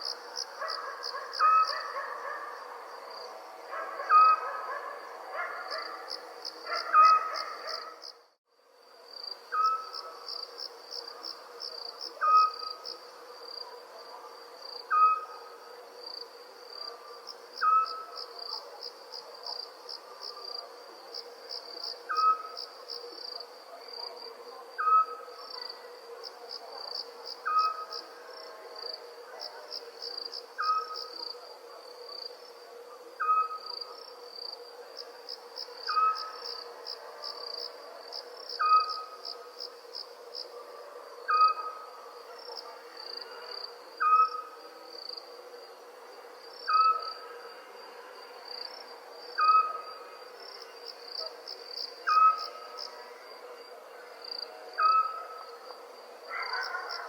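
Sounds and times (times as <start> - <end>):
crickets chirping: 0.0 - 57.0
owl calling: 0.7 - 2.1, 4.0 - 4.8, 6.7 - 7.9, 14.9 - 15.4, 17.6 - 18.1, 33.2 - 33.7, 35.9 - 36.4, 44.0 - 44.6, 52.1 - 52.6.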